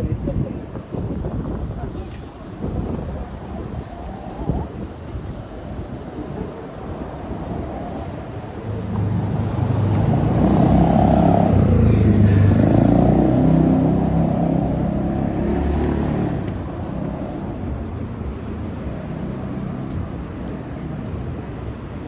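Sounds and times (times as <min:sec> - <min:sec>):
car driving past: 0:07.3 - 0:18.3.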